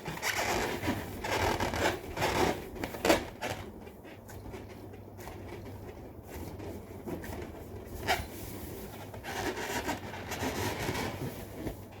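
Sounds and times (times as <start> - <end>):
balloon rubbing squeaks: 0.0 - 3.6, 9.2 - 11.4.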